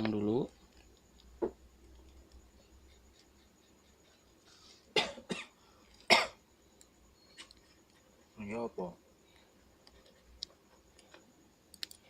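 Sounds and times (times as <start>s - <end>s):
man coughing: 5.0s - 6.4s.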